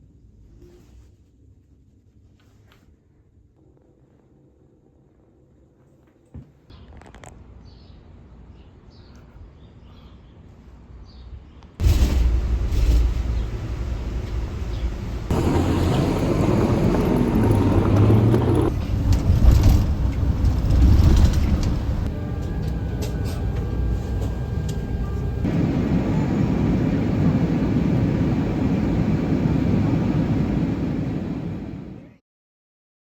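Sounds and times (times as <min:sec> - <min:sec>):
street traffic: 0:11.8 - 0:28.2.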